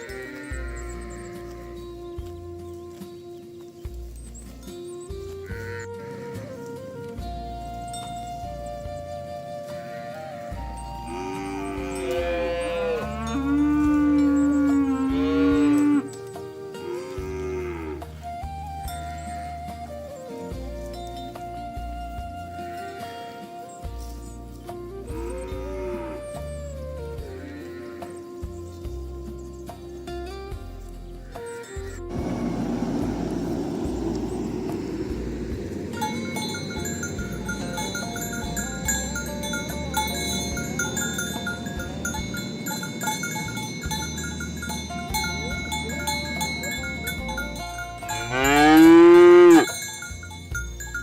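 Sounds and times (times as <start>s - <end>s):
cattle mooing: 0.0s - 1.9s, 11.0s - 16.1s, 16.8s - 18.0s, 25.2s - 26.3s, 32.1s - 47.2s, 48.0s - 49.8s
flute music: 0.0s - 51.0s
bell-like melody: 10.6s - 15.9s, 31.6s - 51.0s
stepped bass notes: 32.0s - 49.6s
dense low rumbling noise: 32.1s - 46.3s.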